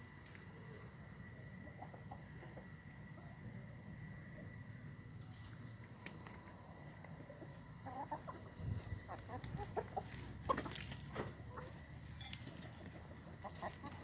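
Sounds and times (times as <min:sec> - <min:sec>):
chickens clucking: 0:00.8 - 0:03.9, 0:06.1 - 0:14.0.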